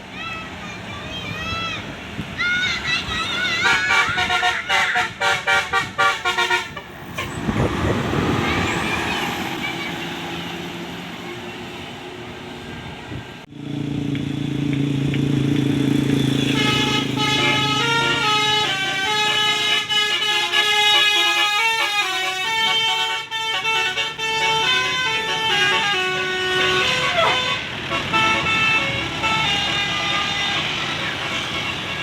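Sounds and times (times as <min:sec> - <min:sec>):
traffic noise: 0:00.0 - 0:32.0
bus musical horn melody: 0:03.4 - 0:10.6, 0:16.2 - 0:32.0.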